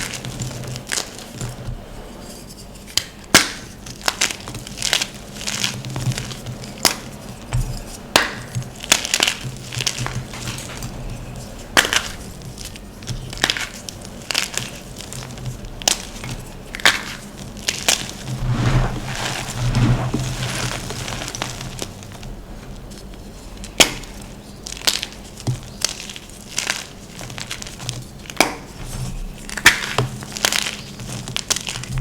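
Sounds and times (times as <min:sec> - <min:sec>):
chalk crunching by hand: 0:18.0 - 0:22.0.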